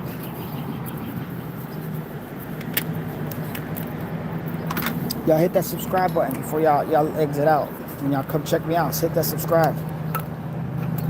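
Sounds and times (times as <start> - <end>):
engine humming: 0.0 - 11.0.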